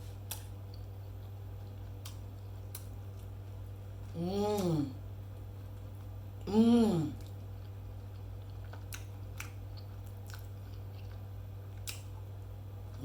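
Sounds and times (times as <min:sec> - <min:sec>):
low electrical hum: 0:00.0 - 0:13.0
chewing mouth clicks and smacks: 0:00.2 - 0:03.4, 0:07.2 - 0:12.3
person humming mmm: 0:04.1 - 0:05.0, 0:06.4 - 0:07.3.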